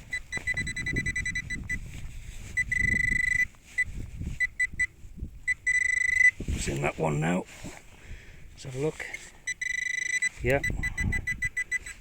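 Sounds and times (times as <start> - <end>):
metal detector beeping: 0.0 - 6.4, 9.1 - 12.0.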